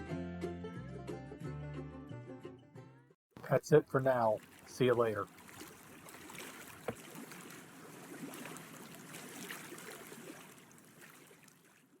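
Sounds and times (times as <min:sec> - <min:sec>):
water lapping against boat hull: 0:03.4 - 0:12.0.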